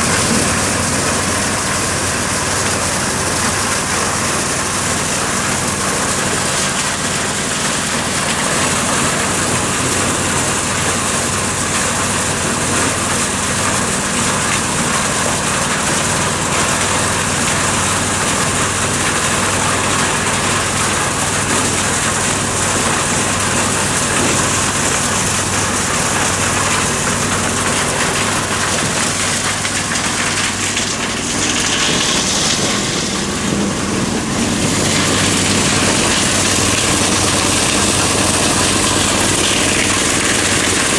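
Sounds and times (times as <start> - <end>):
engine drone: 0.0 - 40.9
corn sheller rushing hiss: 18.9 - 40.9.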